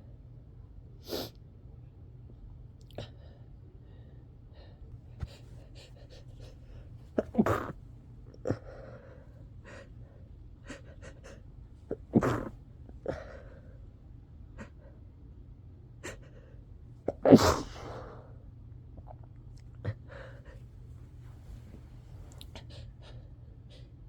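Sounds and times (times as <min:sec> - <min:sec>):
person sneezing: 0:07.2 - 0:07.8, 0:11.9 - 0:13.4, 0:17.1 - 0:18.3
quick breath intake: 0:17.4 - 0:18.3.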